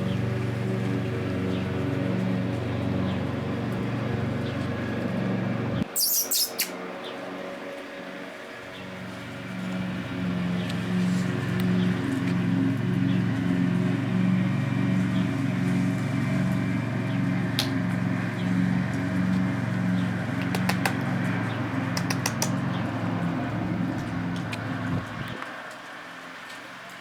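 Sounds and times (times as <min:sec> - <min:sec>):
motor humming with pulses: 0:00.0 - 0:07.2, 0:08.4 - 0:25.5
sharp clicks: 0:17.6 - 0:17.8, 0:20.4 - 0:21.2, 0:21.9 - 0:22.7.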